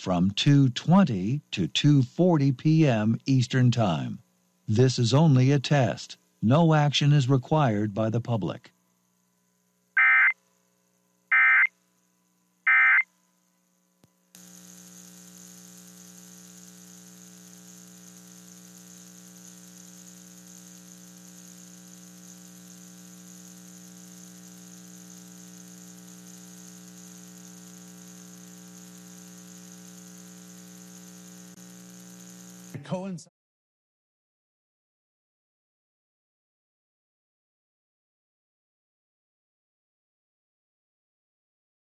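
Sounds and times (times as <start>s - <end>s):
steady electrical buzz: 0.0s - 33.1s
digital data bursts: 10.0s - 10.4s, 11.3s - 11.7s, 12.7s - 13.0s.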